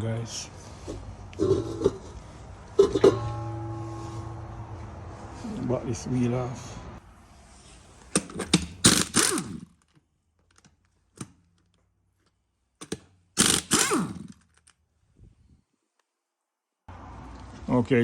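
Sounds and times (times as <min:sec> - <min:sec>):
impact wrench hammering: 0:08.2 - 0:09.7, 0:12.8 - 0:14.4.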